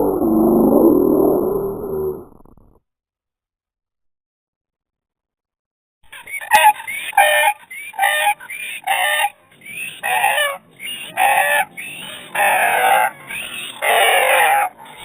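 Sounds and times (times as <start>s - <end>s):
animal squawking calls: 6.1s - 15.0s.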